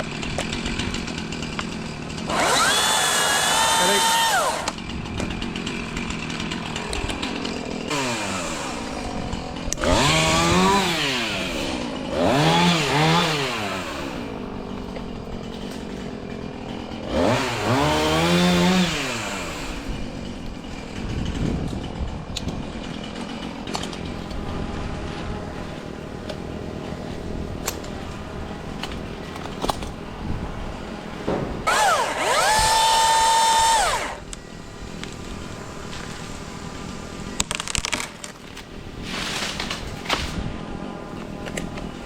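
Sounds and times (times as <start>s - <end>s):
battery chainsaw motor whine: 0.0s - 22.8s, 31.6s - 38.1s.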